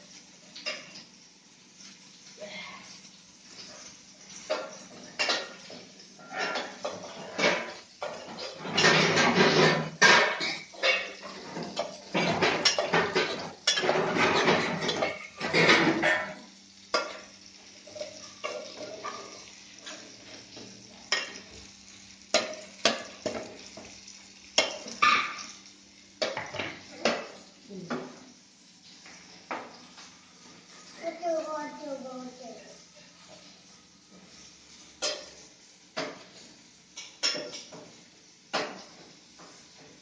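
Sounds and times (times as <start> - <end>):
utensils clinking against pots: 0.5 - 1.1, 3.5 - 25.6, 26.2 - 28.2, 35.0 - 36.4, 37.0 - 40.0.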